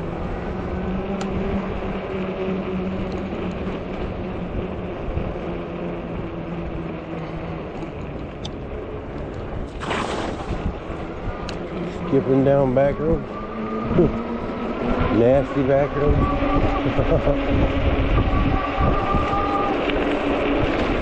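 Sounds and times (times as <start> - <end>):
wind and tyre noise: 0.0 - 21.0
light ticks: 1.2 - 1.4, 7.1 - 9.4.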